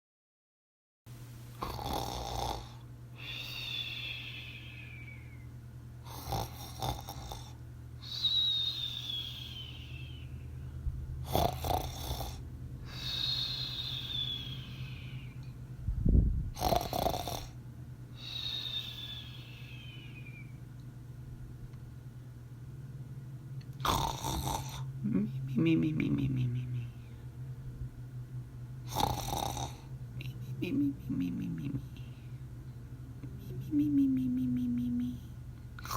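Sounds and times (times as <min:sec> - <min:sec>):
cartoon snoring: 0:01.6 - 0:03.8, 0:06.1 - 0:07.6, 0:11.2 - 0:14.7, 0:16.6 - 0:17.6, 0:23.8 - 0:26.8, 0:28.9 - 0:31.9
falling whistle: 0:08.1 - 0:10.3.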